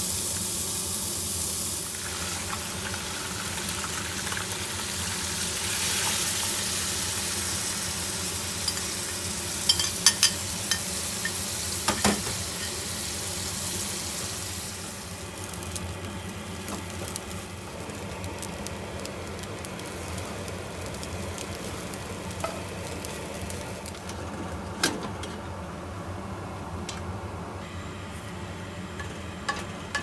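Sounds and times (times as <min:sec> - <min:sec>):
food sizzling in a frying pan: 0:00.0 - 0:24.2.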